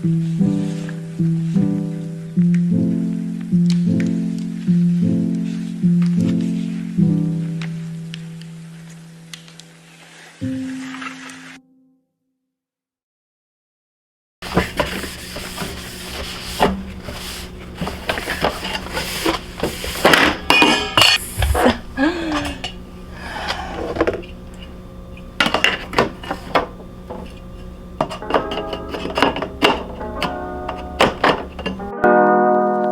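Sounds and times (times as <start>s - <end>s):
items clattering: 14.4s - 31.9s
glass bottles and jars clinking: 17.8s - 22.8s, 23.8s - 31.9s.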